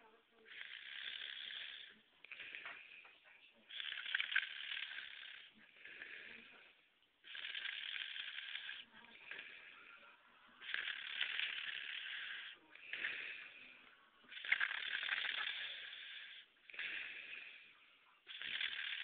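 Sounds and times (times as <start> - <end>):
loud snoring: 0.5 - 2.0, 3.7 - 6.5, 7.2 - 9.8, 10.6 - 13.6, 14.3 - 17.6, 18.3 - 19.0.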